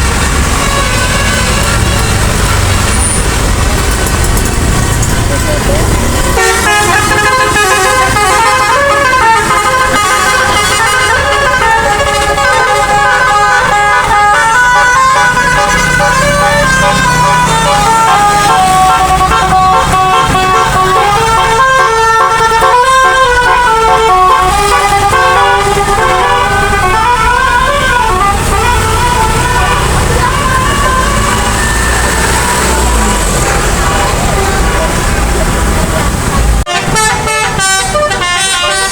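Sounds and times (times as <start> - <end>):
bus horn melody: 0.0 - 3.5, 4.6 - 35.6, 36.6 - 38.9.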